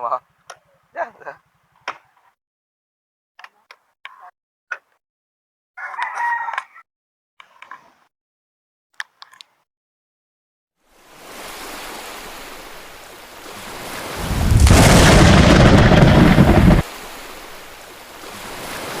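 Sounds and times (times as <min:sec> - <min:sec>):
sea surf: 0:10.9 - 0:19.0
wind blowing on microphone: 0:13.8 - 0:17.0.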